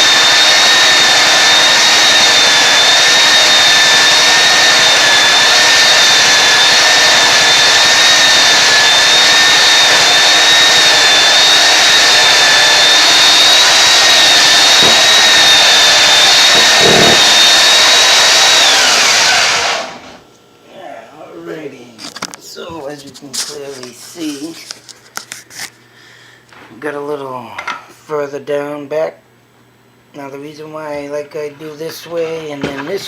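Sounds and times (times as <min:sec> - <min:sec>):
belt sander whining: 0:00.0 - 0:20.2.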